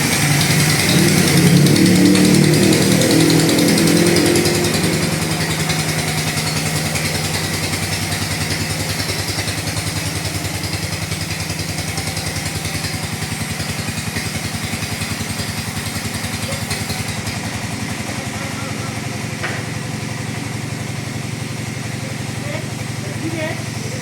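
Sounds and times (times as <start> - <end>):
chainsaw engine idling: 0.0 - 24.0.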